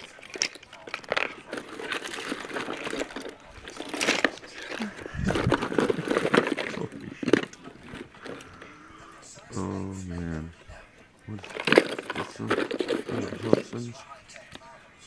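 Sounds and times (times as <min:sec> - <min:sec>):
objects knocking: 0:00.0 - 0:08.7, 0:11.4 - 0:14.0
crinkling and rustling: 0:00.0 - 0:09.7, 0:10.6 - 0:14.8.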